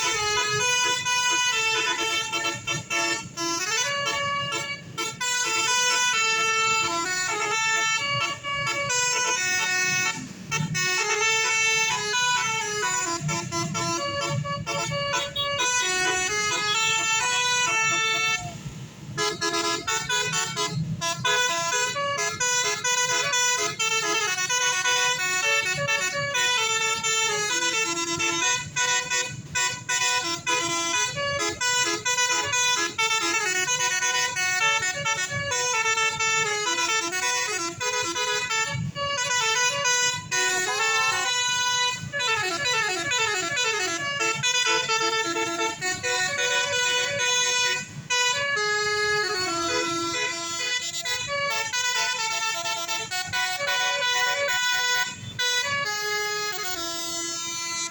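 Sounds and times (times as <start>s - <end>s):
bus horn playing a melody: 0.0s - 57.9s.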